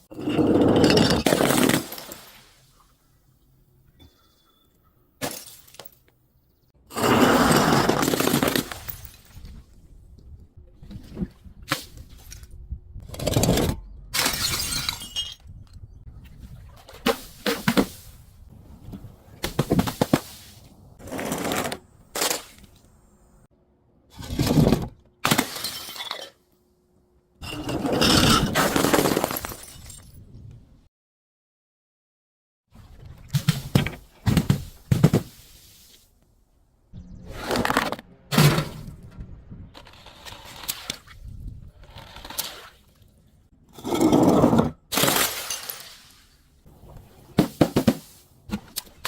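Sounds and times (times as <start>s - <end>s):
glass bottles smashing: 0.2s - 2.6s, 5.2s - 6.0s, 14.2s - 15.5s, 25.3s - 26.4s, 27.6s - 30.2s, 44.9s - 46.0s.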